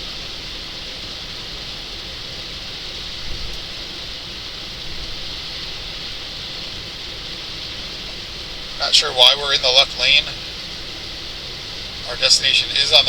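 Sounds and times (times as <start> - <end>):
heavy rain hiss: 0.0 - 13.0
tyres on wet road: 5.9 - 13.0.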